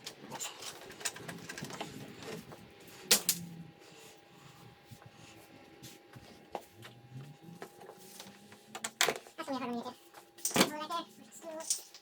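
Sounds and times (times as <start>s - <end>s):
tools and parts clacking: 0.0s - 2.4s, 10.4s - 10.8s, 11.5s - 12.0s.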